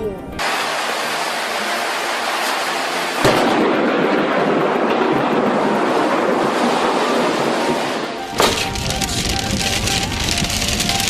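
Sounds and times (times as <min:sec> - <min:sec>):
rain hissing: 0:00.4 - 0:11.0
thunder crack and rumble: 0:03.2 - 0:11.0.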